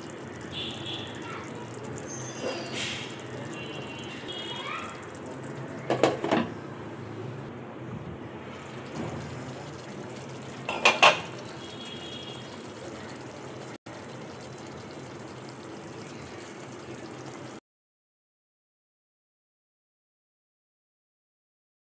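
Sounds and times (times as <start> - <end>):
pan hissing on stove: 1.8 - 6.4
metal utensil clanking on cookware: 5.9 - 6.5, 10.6 - 11.5.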